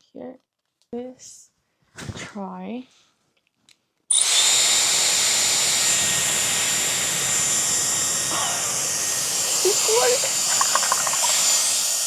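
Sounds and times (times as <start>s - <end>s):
hair styler blowing air: 4.1s - 12.0s
motor whine: 4.1s - 12.0s.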